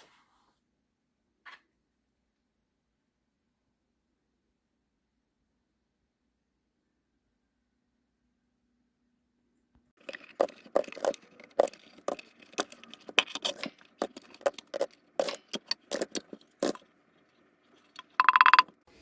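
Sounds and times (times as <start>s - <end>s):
sharp clicks and clatters: 10.0s - 18.9s.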